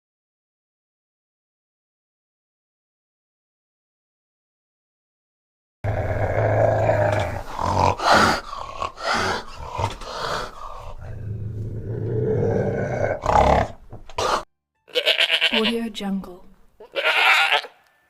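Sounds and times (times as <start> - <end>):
bear growling: 5.8 - 14.5.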